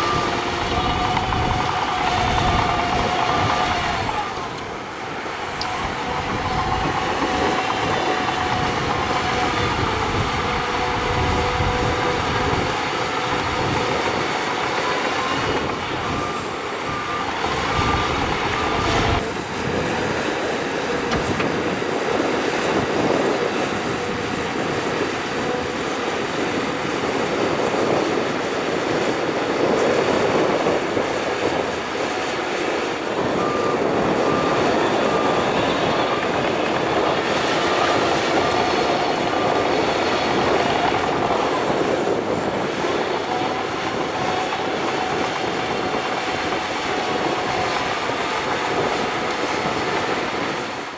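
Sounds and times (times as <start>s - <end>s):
reversing alarm beeps: 0.0s - 20.3s, 30.2s - 50.5s
bulldozer diesel engine under load: 0.0s - 50.9s
steel tracks clanking and squealing: 0.0s - 50.9s.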